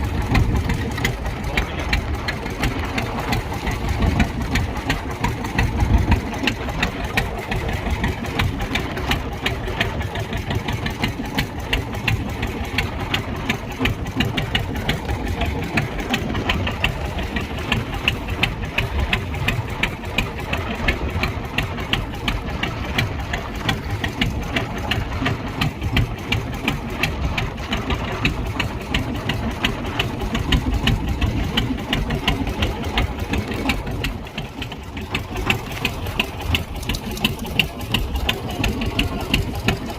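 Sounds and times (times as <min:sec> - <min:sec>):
engine knocking rhythmically: 0:00.0 - 0:39.9.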